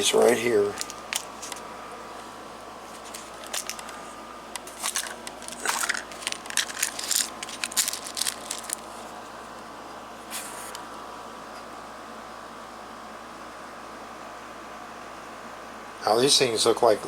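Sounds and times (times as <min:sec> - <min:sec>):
pellets rattling in a pack: 0:03.0 - 0:03.9, 0:04.6 - 0:09.0.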